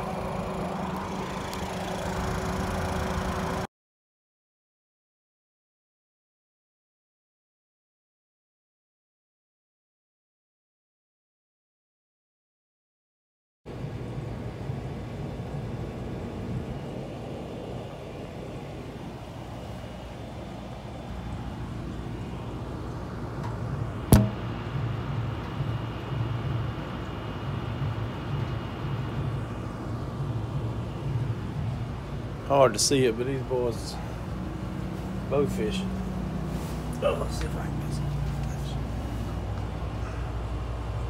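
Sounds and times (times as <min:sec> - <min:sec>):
low motor rumble: 0:00.0 - 0:03.7, 0:13.7 - 0:41.0.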